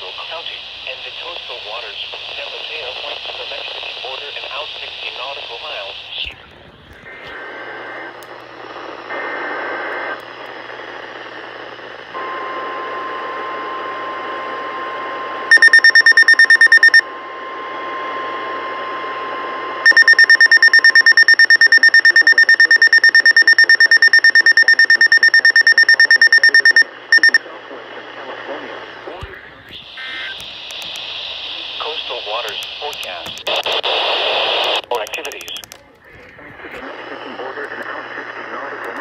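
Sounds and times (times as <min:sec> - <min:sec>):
rapid high-pitched beeping: 0:15.5 - 0:17.0, 0:19.9 - 0:27.4
steady warning alarm tone: 0:15.5 - 0:17.0, 0:19.8 - 0:27.4.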